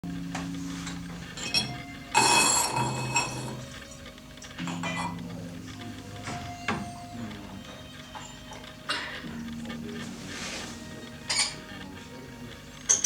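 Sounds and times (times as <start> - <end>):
ceramic teaware clinking: 1.4 - 3.7, 4.6 - 5.2, 11.3 - 11.6.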